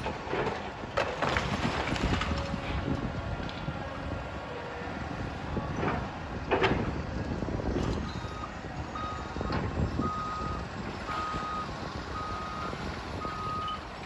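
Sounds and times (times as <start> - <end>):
diesel engine rumble: 0.0 - 14.0
reversing alarm beeping: 8.0 - 13.9.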